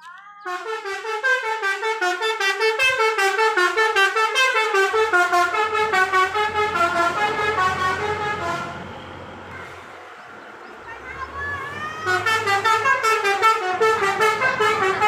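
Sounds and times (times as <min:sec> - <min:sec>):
low engine rumble: 0:00.2 - 0:15.0
multi-tone bus horn melody: 0:00.4 - 0:09.3, 0:12.0 - 0:15.0.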